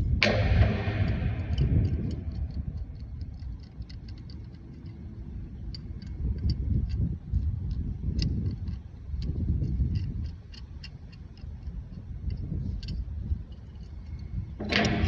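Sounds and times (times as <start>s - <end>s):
metal clank: 0.0s - 4.5s, 14.6s - 15.0s
low rumble: 0.0s - 15.0s
light sharp ticks: 0.2s - 15.0s.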